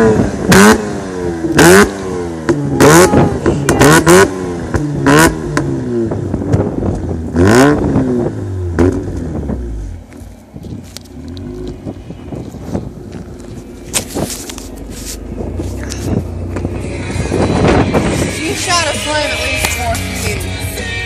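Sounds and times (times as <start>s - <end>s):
rotary engine revving: 0.0s - 10.1s, 11.0s - 20.6s
exhaust pops and cracks: 6.3s - 7.2s, 8.8s - 18.2s.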